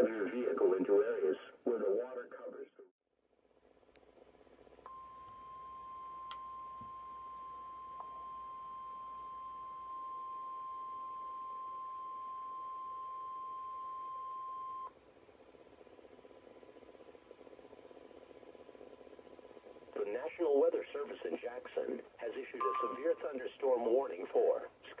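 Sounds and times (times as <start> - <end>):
faint radio hiss: 0.0 - 2.8, 19.9 - 25.0.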